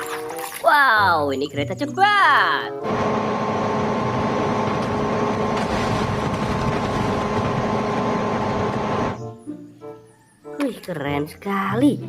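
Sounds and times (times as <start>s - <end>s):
train whine: 2.8s - 9.2s
high-speed train rumble: 2.9s - 9.2s.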